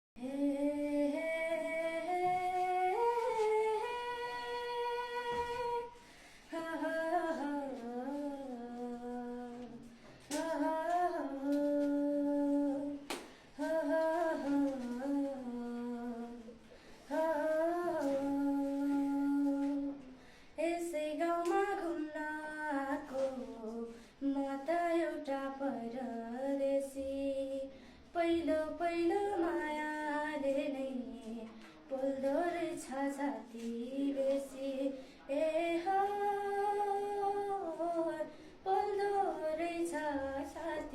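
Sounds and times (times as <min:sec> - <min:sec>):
person singing unaccompanied: 0:00.2 - 0:05.9, 0:06.5 - 0:13.0, 0:17.1 - 0:27.6
singer breathing: 0:06.0 - 0:06.6, 0:20.1 - 0:20.6, 0:27.7 - 0:28.1, 0:38.3 - 0:38.6.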